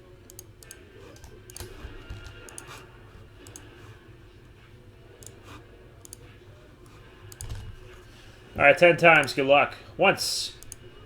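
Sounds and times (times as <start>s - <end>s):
keyboard and mouse clicks: 0.2s - 2.8s, 3.4s - 3.7s, 5.2s - 6.2s, 7.3s - 8.0s, 10.6s - 10.9s.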